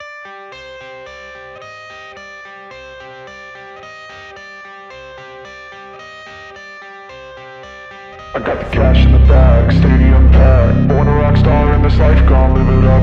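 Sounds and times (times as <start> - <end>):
guitar-led pop-rock music: 7.1 - 13.0.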